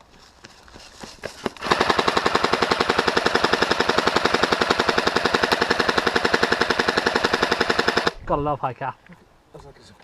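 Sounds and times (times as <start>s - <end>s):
airsoft gun full-auto burst: 1.6s - 8.2s.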